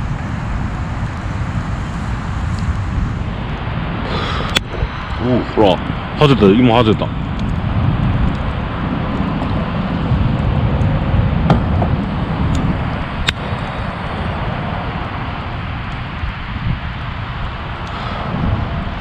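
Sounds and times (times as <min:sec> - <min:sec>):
steady background rush: 0:00.0 - 0:19.0
wood popping in campfire: 0:00.2 - 0:18.2.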